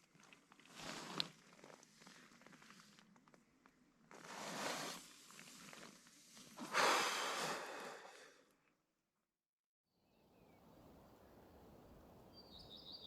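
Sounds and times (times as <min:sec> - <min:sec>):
person breathing out hard: 0:06.6 - 0:08.4.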